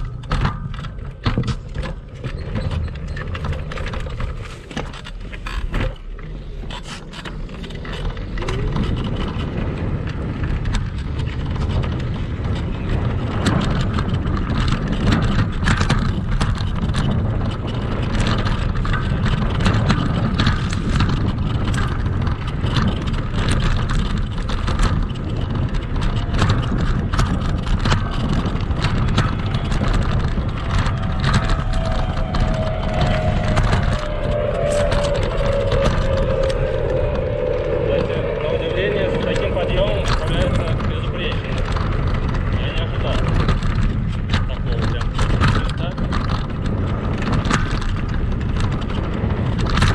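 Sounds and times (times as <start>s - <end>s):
scooter rumbling over rough ground: 0.0s - 49.9s
faint falling whine: 28.0s - 41.5s.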